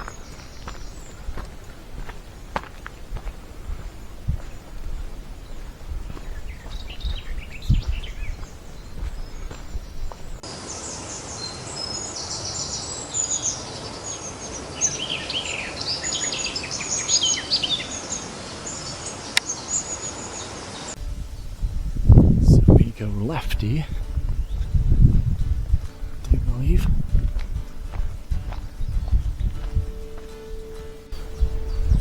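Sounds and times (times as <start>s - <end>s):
footsteps: 0.0s - 10.5s, 23.8s - 32.0s
songbirds chirping and warbling: 0.0s - 32.0s.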